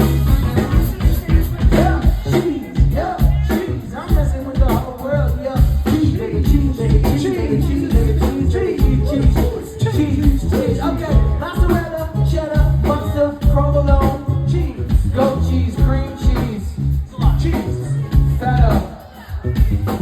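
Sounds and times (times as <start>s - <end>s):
song with vocal and beat: 0.0s - 20.0s
strong bass line: 0.0s - 20.0s.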